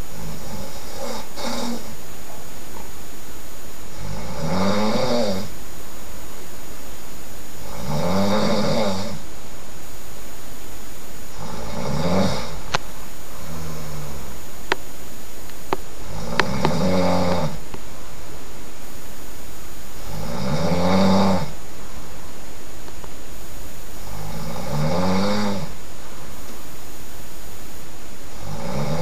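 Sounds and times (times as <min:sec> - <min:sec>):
person snoring loudly: 0:00.1 - 0:02.0, 0:03.9 - 0:05.6, 0:07.6 - 0:09.2, 0:11.3 - 0:12.7, 0:13.4 - 0:14.3, 0:16.0 - 0:17.6, 0:20.0 - 0:21.6, 0:24.0 - 0:25.8, 0:28.3 - 0:29.0
sharp clicks: 0:14.6 - 0:16.8.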